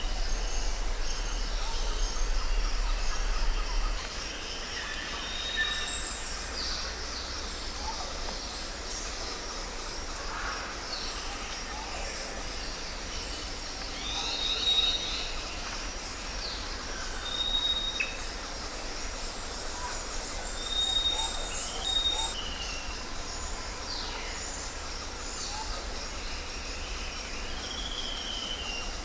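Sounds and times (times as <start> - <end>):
steady low rumble: 0.0 - 4.9.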